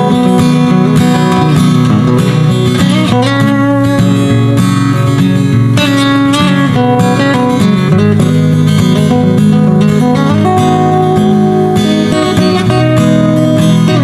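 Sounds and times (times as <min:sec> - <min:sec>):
country acoustic guitar music: 0:00.0 - 0:14.0.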